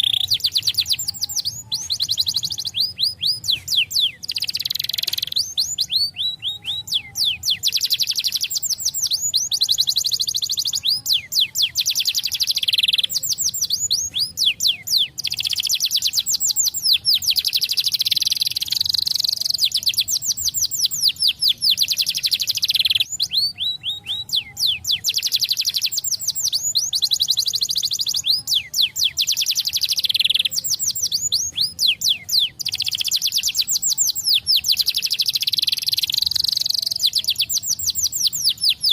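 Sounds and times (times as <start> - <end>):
canary singing trilled rolls: 0.0 - 38.9.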